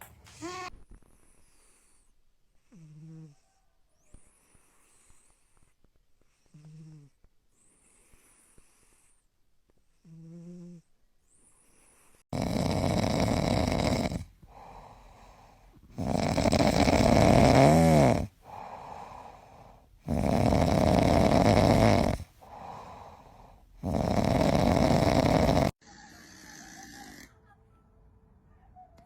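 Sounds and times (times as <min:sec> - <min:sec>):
cat snoring: 0:01.0 - 0:05.5, 0:06.2 - 0:09.2, 0:09.9 - 0:27.3
cat breathing softly: 0:14.3 - 0:16.0, 0:18.4 - 0:20.1, 0:22.3 - 0:23.8.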